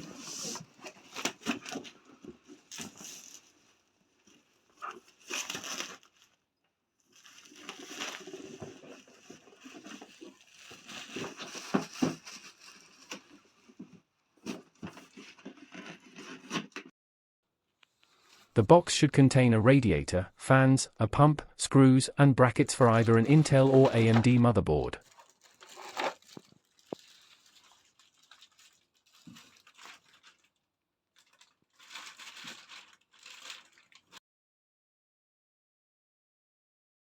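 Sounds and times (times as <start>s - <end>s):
cardboard and plastic rustling: 0.0s - 6.4s, 7.0s - 16.9s, 22.8s - 30.6s, 31.2s - 34.2s.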